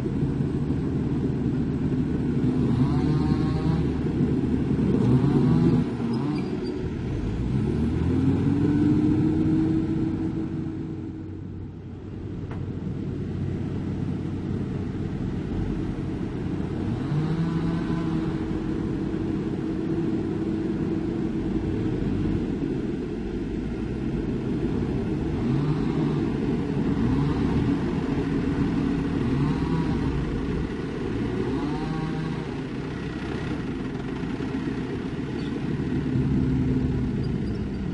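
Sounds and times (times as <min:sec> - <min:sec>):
heavy diesel engine revving: 0:00.0 - 0:37.9.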